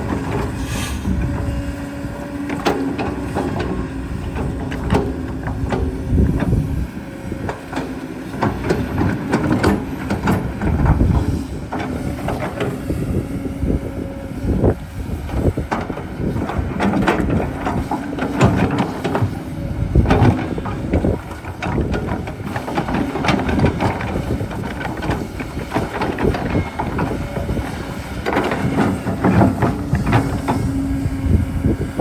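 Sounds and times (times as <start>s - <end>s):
excavator motor hum: 0.0s - 32.0s
knocks clatter and scraping: 14.6s - 32.0s.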